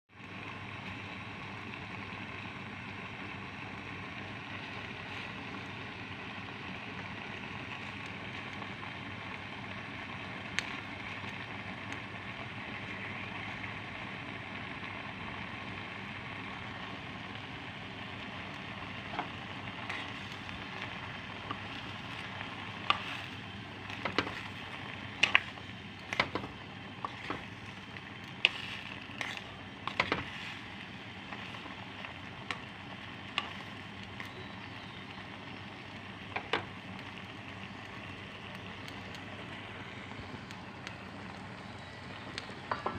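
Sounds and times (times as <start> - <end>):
food sizzling in a frying pan: 0.1 - 42.9
utensil clicking against pan: 23.9 - 27.5.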